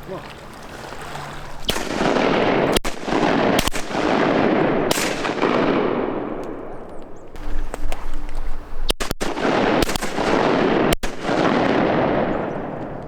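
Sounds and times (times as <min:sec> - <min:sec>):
shotgun shots: 0:01.7 - 0:08.0, 0:08.9 - 0:13.0.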